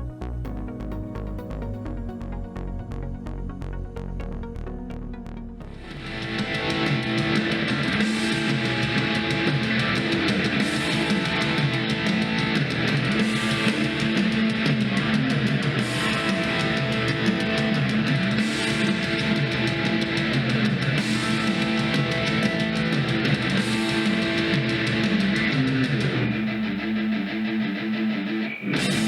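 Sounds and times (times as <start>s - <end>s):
guitar rock music from speakers: 5.7s - 29.0s.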